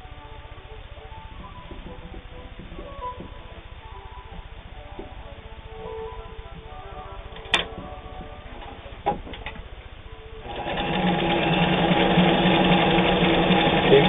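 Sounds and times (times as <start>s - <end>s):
sewing machine sewing: 10.4s - 14.0s.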